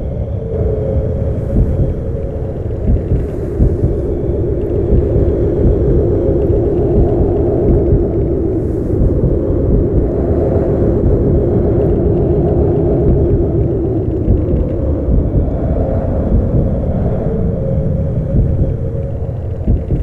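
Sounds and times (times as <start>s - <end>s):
deep rumbling drone: 0.0s - 20.0s
low wavering held tones: 0.0s - 20.0s.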